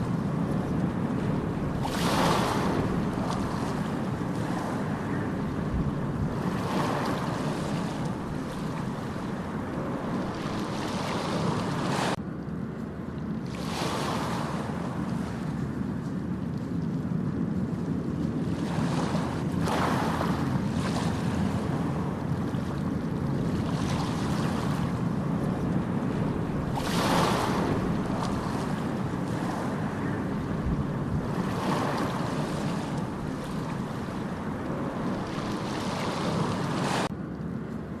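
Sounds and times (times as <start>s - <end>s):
ocean surf on beach: 0.0s - 12.3s, 13.2s - 38.0s.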